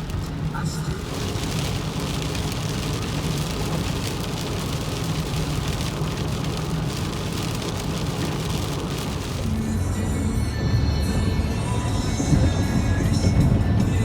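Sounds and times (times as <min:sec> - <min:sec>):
rain spattering on a car: 0:00.0 - 0:09.8
road and engine rumble: 0:00.0 - 0:14.0.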